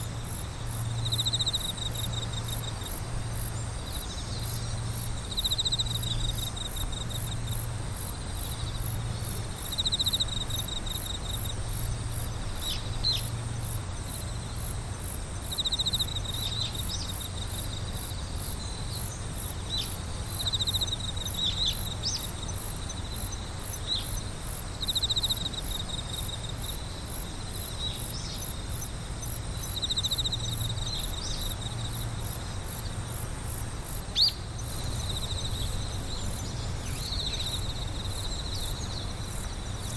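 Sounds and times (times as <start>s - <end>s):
high pulsing cricket chirp: 0.0s - 39.9s
lower insect trill: 0.0s - 39.9s.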